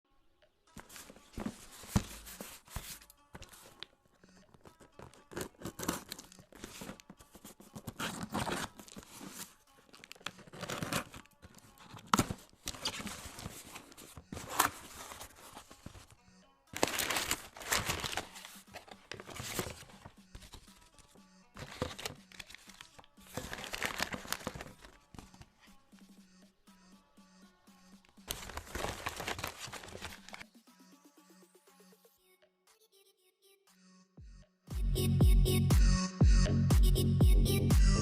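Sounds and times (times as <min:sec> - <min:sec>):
quiet background music: 0:00.0 - 0:38.0
packaging crinkling and tearing: 0:04.6 - 0:16.0, 0:16.8 - 0:20.0, 0:21.6 - 0:25.0, 0:28.3 - 0:30.4.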